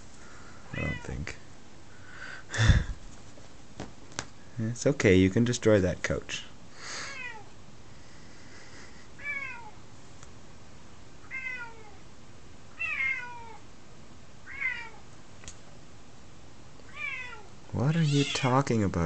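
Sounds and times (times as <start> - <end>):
cat meowing: 0.7 - 1.2, 11.3 - 12.0, 12.8 - 13.6, 14.5 - 15.0, 16.9 - 18.6.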